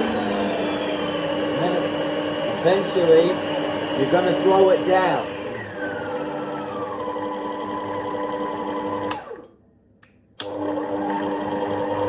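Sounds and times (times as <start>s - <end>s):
electric mixer motor whine: 0.0s - 9.5s, 10.4s - 12.0s
mixer switch clicking: 9.0s - 10.6s.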